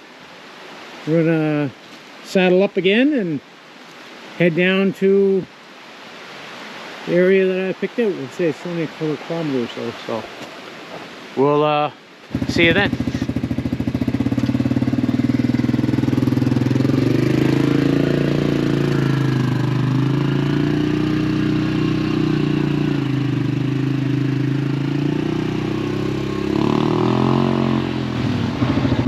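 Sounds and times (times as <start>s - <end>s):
atv engine running: 12.3s - 29.0s.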